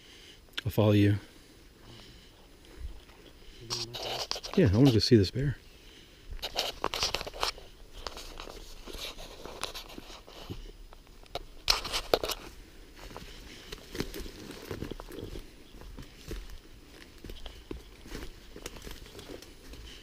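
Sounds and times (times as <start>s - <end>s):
footsteps crunching through undergrowth: 6.3s - 20.0s
twigs snapping and rustling: 13.2s - 15.4s, 16.2s - 19.9s.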